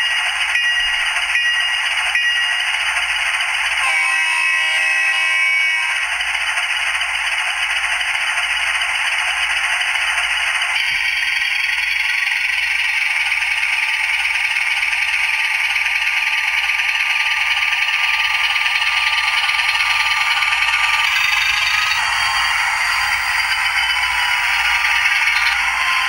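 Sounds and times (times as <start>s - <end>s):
locomotive engine through tiny speaker: 4.7s - 26.0s.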